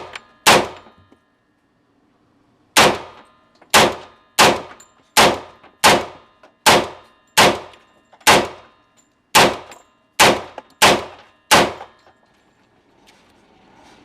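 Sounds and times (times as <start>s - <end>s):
rifle gunshots: 0.0s - 0.9s, 2.8s - 8.7s, 9.3s - 12.0s.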